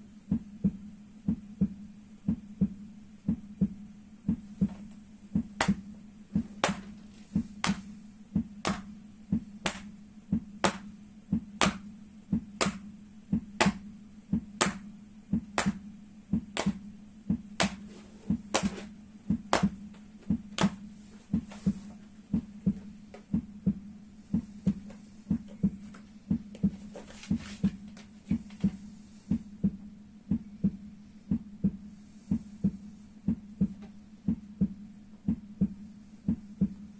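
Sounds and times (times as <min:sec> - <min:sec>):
heartbeat lub-dub: 0:00.0 - 0:36.9
hands slapping soles of feet: 0:05.6 - 0:05.8, 0:06.4 - 0:07.9, 0:08.6 - 0:08.9, 0:09.6 - 0:09.9, 0:10.6 - 0:10.9, 0:11.6 - 0:11.9, 0:12.6 - 0:12.8, 0:13.6 - 0:13.8, 0:14.6 - 0:14.9, 0:15.6 - 0:15.8, 0:16.4 - 0:16.8, 0:17.6 - 0:23.2.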